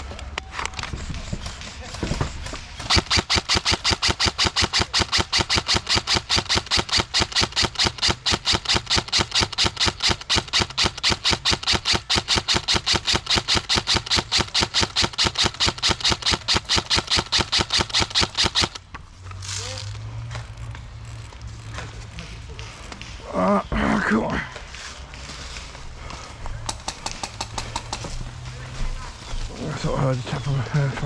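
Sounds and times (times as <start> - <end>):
airsoft gun full-auto firing: 2.8 - 18.8.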